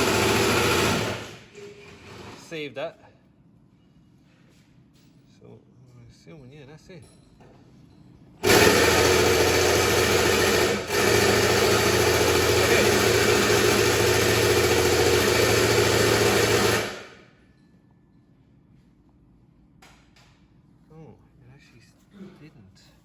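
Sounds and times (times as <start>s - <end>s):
machine running loudly: 0.0s - 1.5s, 8.4s - 17.2s.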